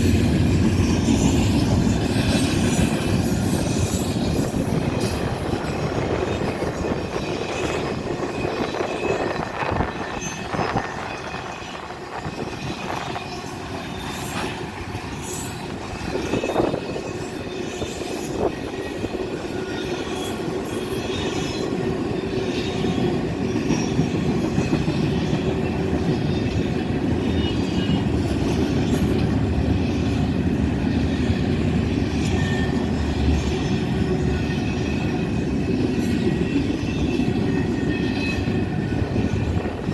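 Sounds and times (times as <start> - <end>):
freight train rumbling past: 0.0 - 39.9
train wheel clatter: 0.0 - 39.9
wheel squeal: 31.1 - 35.2.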